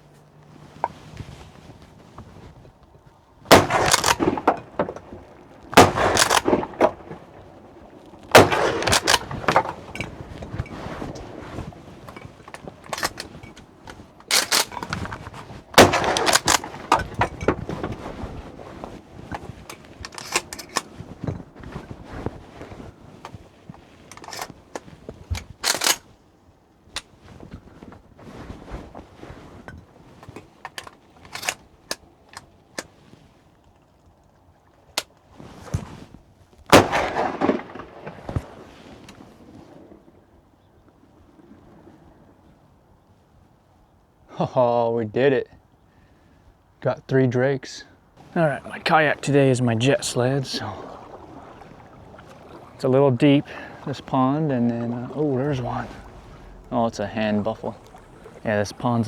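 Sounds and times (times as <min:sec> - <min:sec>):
shotgun shots: 0:03.5 - 0:07.3, 0:08.3 - 0:10.0, 0:15.8 - 0:17.5, 0:36.7 - 0:38.7.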